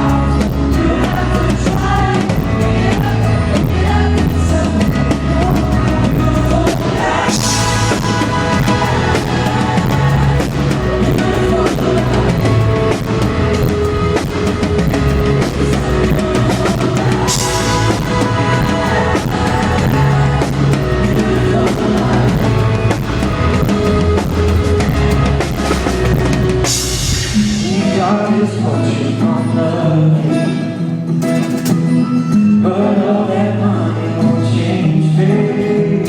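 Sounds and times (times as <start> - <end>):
drum kit: 0.0 - 28.5
bass: 0.0 - 36.0
electric guitar: 0.0 - 36.0.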